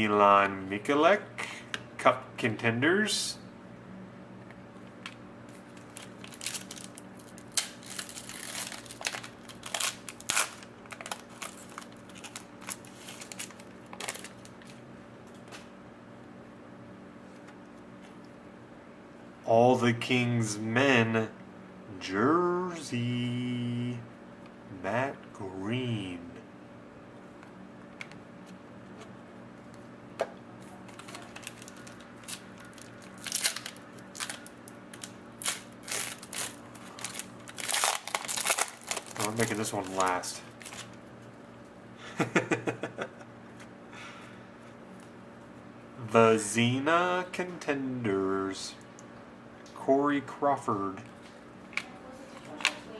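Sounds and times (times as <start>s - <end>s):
steady low hum: 0.0s - 52.9s
card pack wrapper crinkling: 5.5s - 14.8s, 30.9s - 41.0s.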